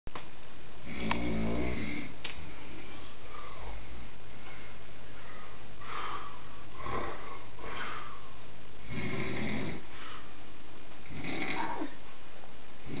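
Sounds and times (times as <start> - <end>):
dog snoring and snuffling: 0.8 - 2.2, 8.8 - 9.8, 11.0 - 11.9.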